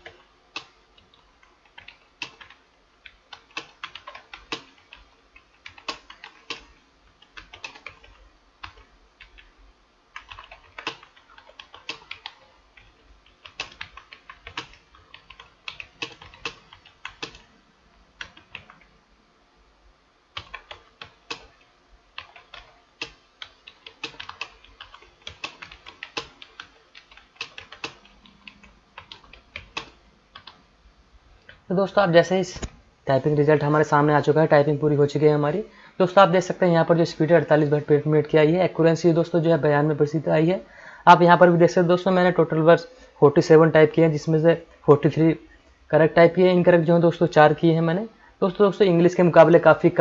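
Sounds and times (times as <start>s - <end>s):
keyboard keys clicking: 0.0s - 9.5s, 10.2s - 17.5s, 20.4s - 30.6s.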